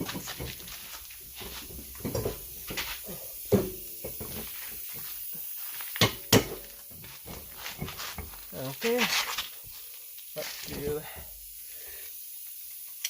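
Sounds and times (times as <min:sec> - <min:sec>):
metal knocks and clanks: 0:01.4 - 0:02.9, 0:03.5 - 0:05.0, 0:06.0 - 0:08.5.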